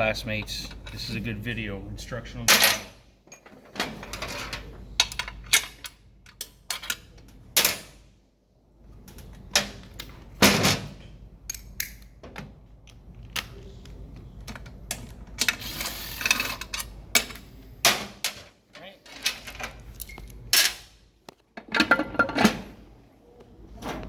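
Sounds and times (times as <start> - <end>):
metallic clicks and clanks of tools: 2.5 - 8.0, 11.4 - 13.7, 14.4 - 21.0, 21.6 - 22.6.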